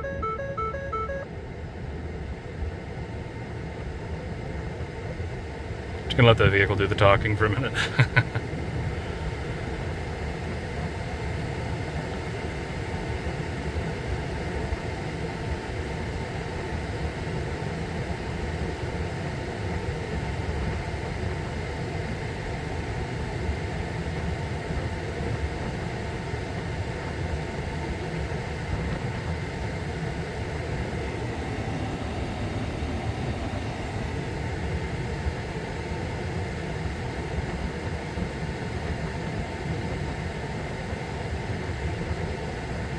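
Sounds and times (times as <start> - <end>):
vehicle whirring hum: 29.6 - 38.2.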